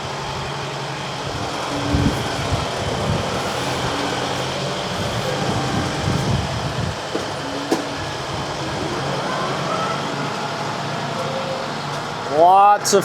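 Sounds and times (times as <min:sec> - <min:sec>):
skid steer engine running: 0:00.0 - 0:12.5
wind buffeting microphone: 0:01.1 - 0:10.1.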